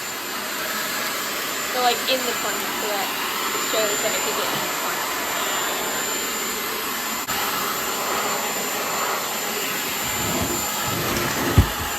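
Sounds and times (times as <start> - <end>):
stick vacuum whirring: 9.8 - 11.9.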